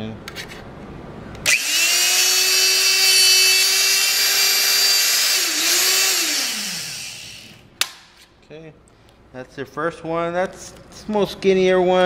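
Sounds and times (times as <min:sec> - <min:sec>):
hydraulic punch motor whining: 0:01.4 - 0:07.7.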